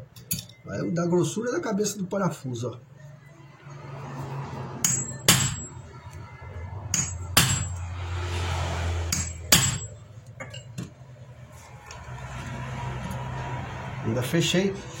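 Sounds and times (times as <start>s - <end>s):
hammer striking metal tool: 4.8s - 5.8s, 6.9s - 7.9s, 9.1s - 10.7s.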